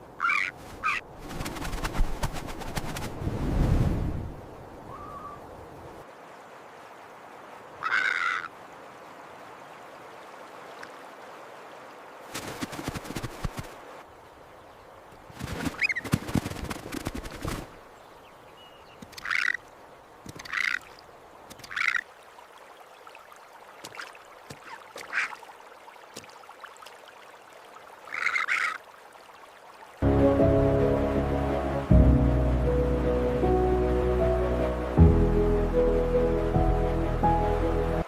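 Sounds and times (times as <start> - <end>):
raven calling: 0.1 - 1.0, 7.8 - 8.6, 19.1 - 19.6, 20.4 - 20.9, 21.6 - 22.1, 28.1 - 28.8
crackling rustle: 0.5 - 3.8
music: 30.0 - 38.0.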